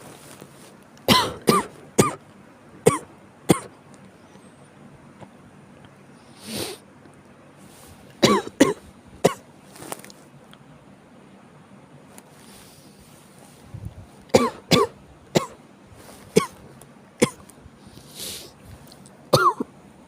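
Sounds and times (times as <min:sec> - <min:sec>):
person coughing: 0:01.1 - 0:02.2, 0:02.9 - 0:03.7, 0:08.2 - 0:09.4, 0:14.3 - 0:15.6, 0:16.3 - 0:16.6, 0:17.2 - 0:17.4, 0:19.3 - 0:19.7.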